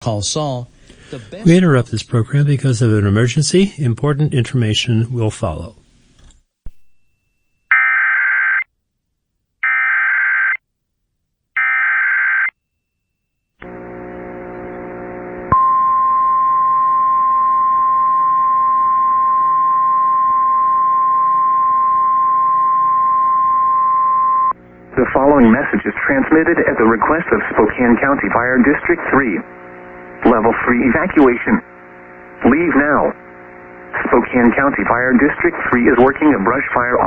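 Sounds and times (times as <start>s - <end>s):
steady high attention tone: 13.6s - 24.6s
low buzz: 13.6s - 25.6s, 28.0s - 35.5s.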